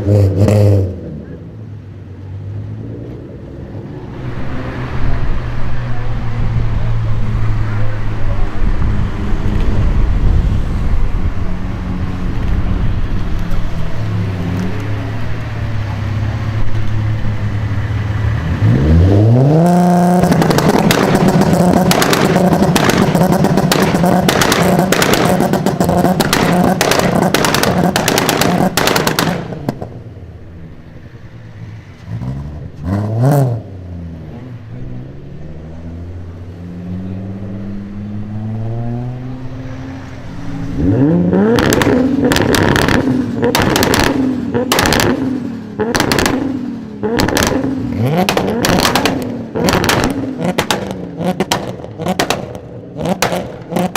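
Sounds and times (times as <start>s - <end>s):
car engine idling and revving: 0.0s - 53.9s
exhaust pops and bangs: 20.1s - 30.0s, 41.5s - 53.9s.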